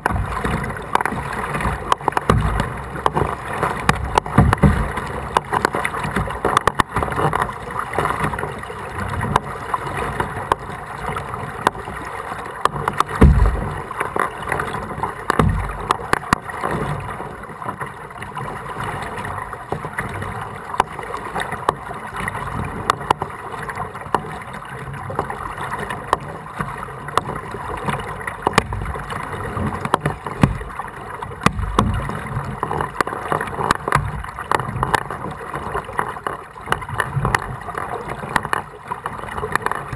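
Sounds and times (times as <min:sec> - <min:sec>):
paddle splashes: 0:00.0 - 0:39.9
small clicks and drips: 0:00.0 - 0:39.9
water sloshing against hull: 0:00.0 - 0:39.9
low thumps: 0:13.2 - 0:13.9.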